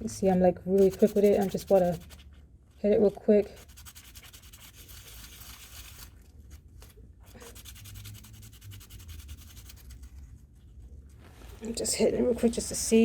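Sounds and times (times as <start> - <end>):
brass part rubbed on sandpaper: 0.8 - 2.3, 3.5 - 6.1, 7.3 - 10.1.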